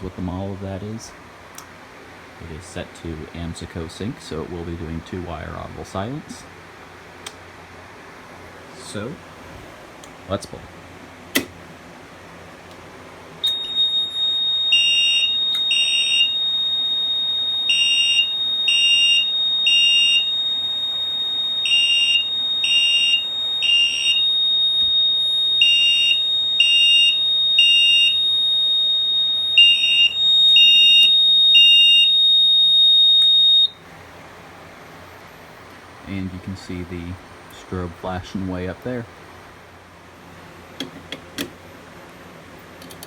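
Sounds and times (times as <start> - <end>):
fire alarm horn blasts: 13.4 - 33.9
steady high-pitched tone: 13.4 - 33.9.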